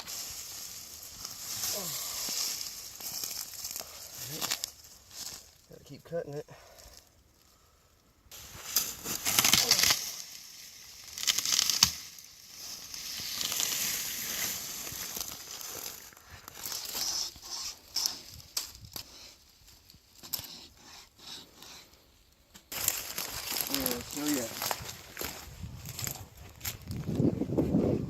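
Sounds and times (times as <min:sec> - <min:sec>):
wood snapping and crunching: 0:08.6 - 0:17.0, 0:22.5 - 0:27.1.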